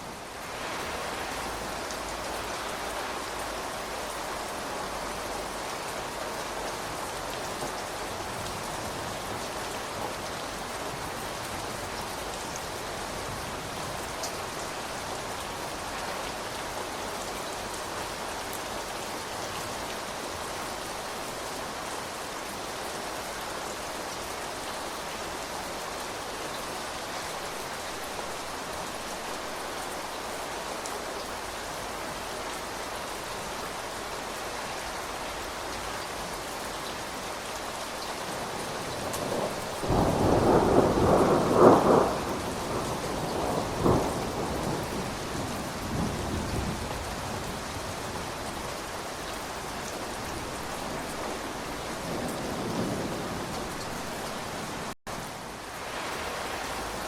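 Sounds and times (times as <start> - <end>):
steady rain falling: 0.0 - 57.0
thunder rumbling: 38.9 - 47.7.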